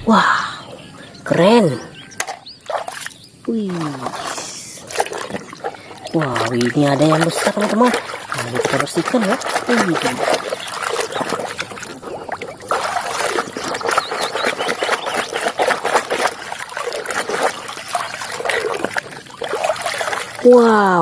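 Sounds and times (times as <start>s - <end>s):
water splashing and trickling: 0.1s - 21.0s.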